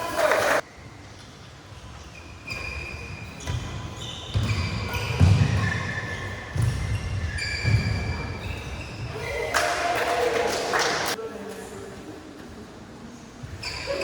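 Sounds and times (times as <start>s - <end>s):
shoes squeaking on court floor: 0.1s - 9.4s, 13.4s - 14.0s.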